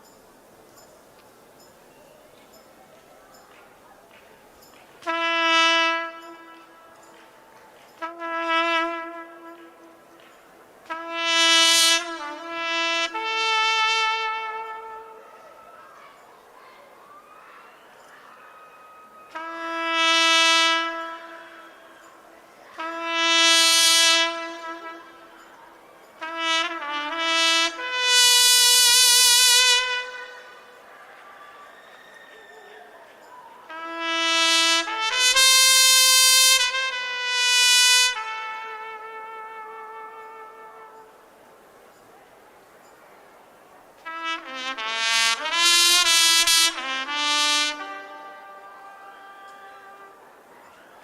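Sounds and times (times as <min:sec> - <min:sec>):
brass instrument long held notes: 0:05.0 - 0:15.8, 0:18.9 - 0:31.1, 0:33.6 - 0:41.6, 0:44.0 - 0:51.0.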